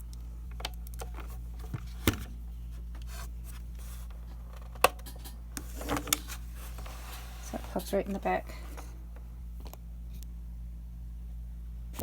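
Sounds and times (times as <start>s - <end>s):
low electrical hum: 0.0s - 12.0s
plastic parts clicking and tapping: 4.5s - 6.4s.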